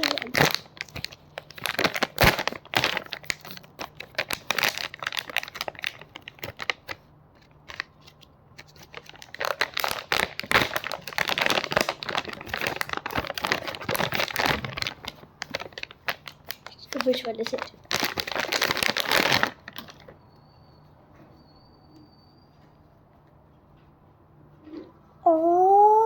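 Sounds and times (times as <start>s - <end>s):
packaging wrapper crinkling: 0.0s - 20.1s.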